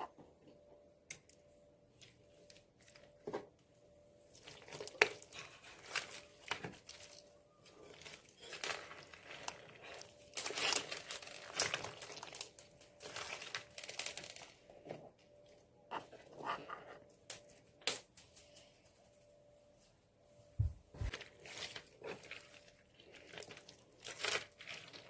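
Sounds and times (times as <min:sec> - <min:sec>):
slime squishing and crackling: 0:04.3 - 0:14.7, 0:21.0 - 0:25.0.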